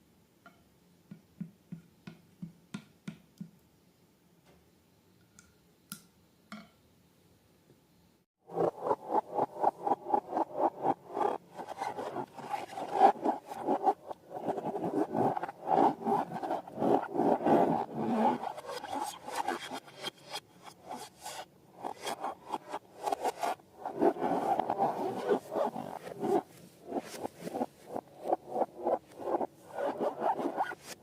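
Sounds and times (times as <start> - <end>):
rubbery scraping and squeaking: 8.5 - 31.0.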